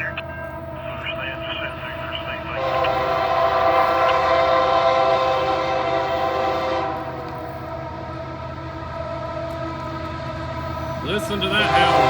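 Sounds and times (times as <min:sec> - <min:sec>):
diesel locomotive rumble: 0:00.0 - 0:12.0
locomotive horn chord: 0:00.0 - 0:12.0.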